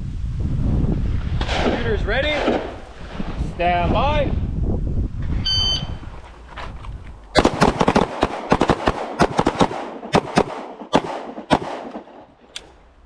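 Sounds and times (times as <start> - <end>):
handgun shots: 7.4 - 12.8.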